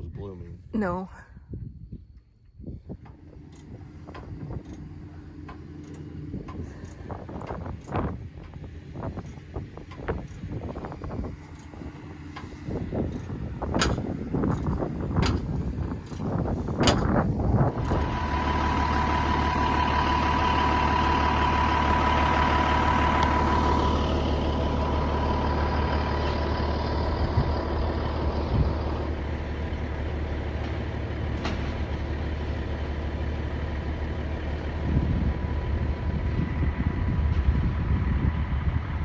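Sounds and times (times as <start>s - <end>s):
large vehicle engine running: 2.9s - 39.0s.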